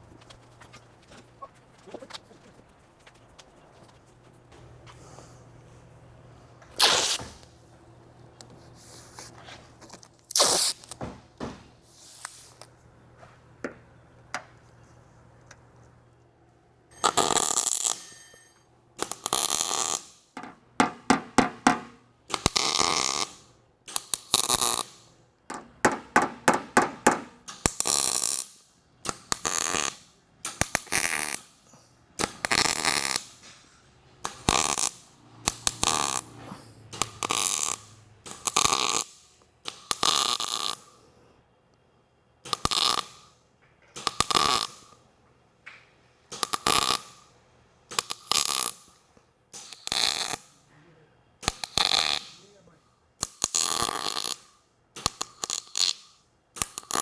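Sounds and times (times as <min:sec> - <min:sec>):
crackling tack welds: 0:06.8 - 0:07.6, 0:09.9 - 0:11.0, 0:16.9 - 0:18.3, 0:19.0 - 0:31.6, 0:32.2 - 0:33.5, 0:34.2 - 0:41.0, 0:42.4 - 0:45.0, 0:46.3 - 0:50.7, 0:51.4 - 0:57.0.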